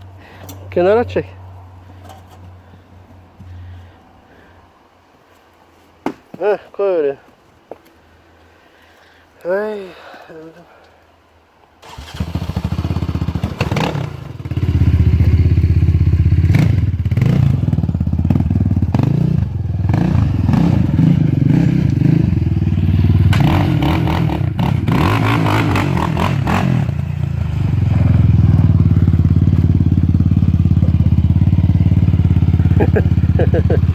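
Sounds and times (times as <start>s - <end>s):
atv engine revving: 11.8s - 33.9s.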